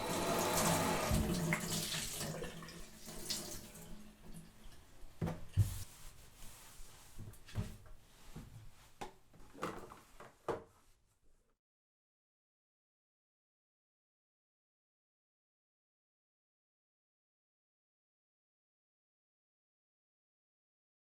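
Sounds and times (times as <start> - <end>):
tap running into sink: 0.2 - 3.6.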